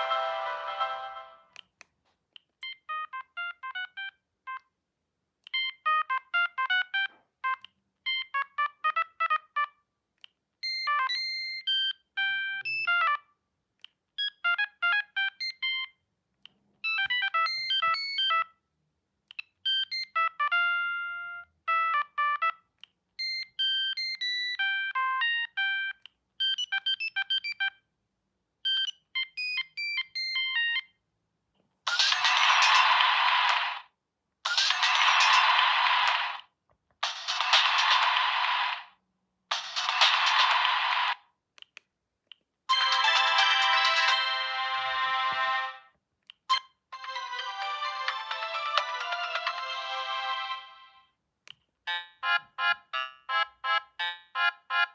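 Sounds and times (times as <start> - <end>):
phone ringtone beeping melody: 0.0 - 1.5, 2.6 - 4.6, 5.6 - 9.8, 10.6 - 13.3, 14.2 - 16.0, 16.8 - 18.6, 19.6 - 22.6, 23.2 - 27.8, 28.7 - 30.9, 42.7 - 45.8, 51.9 - 54.9.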